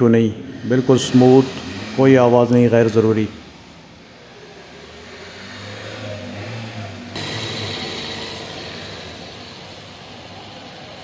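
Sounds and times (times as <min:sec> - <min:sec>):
car engine idling: 0:06.4 - 0:11.0.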